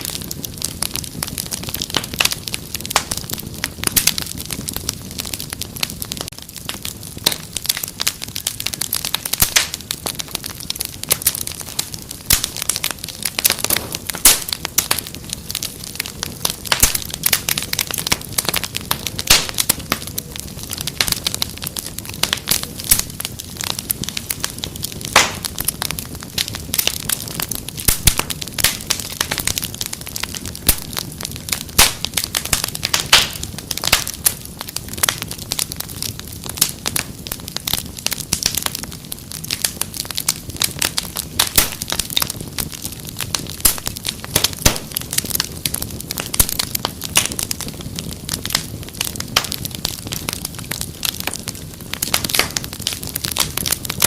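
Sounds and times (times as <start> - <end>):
wood fire crackling: 0.0 - 54.0.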